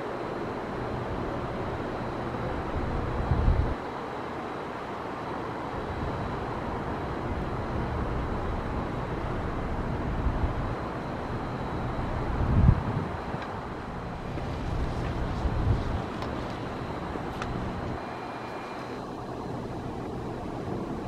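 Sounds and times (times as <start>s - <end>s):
outdoor background hiss: 0.0s - 21.0s
wind buffeting microphone: 2.8s - 3.8s, 12.0s - 18.0s.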